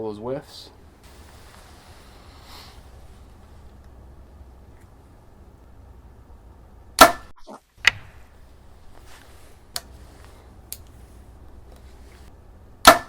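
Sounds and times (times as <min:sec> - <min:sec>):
arrow striking target: 0:07.0 - 0:08.4.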